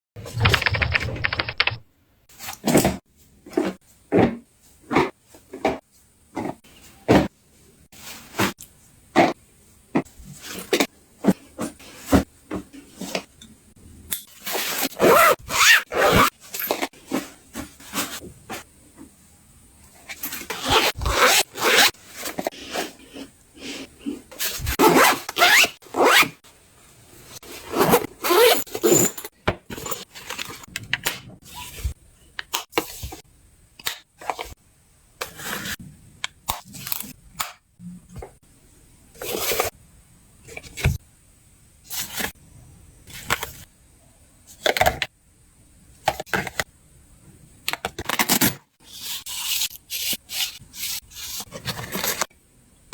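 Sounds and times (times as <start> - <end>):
items rustling and scraping: 2.3 - 13.4, 14.3 - 19.2, 19.8 - 26.2, 27.0 - 32.0, 39.2 - 39.8, 40.5 - 41.0, 41.9 - 42.4, 43.1 - 43.7, 47.8 - 52.3
zippers pulled on bags: 14.6 - 16.3, 20.5 - 21.9.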